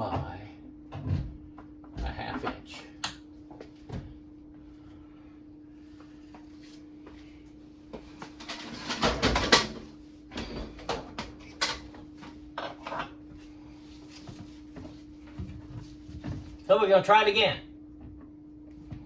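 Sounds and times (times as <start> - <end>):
steady low hum: 0.0 - 19.0
microwave knocking and scraping: 8.5 - 9.9.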